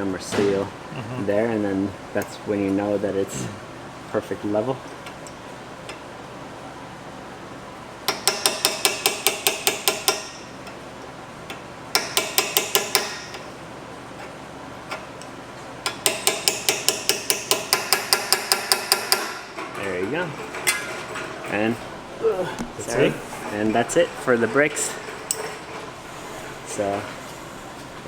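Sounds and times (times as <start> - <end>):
hammer tapping metal pin: 8.1 - 10.4, 15.8 - 19.4.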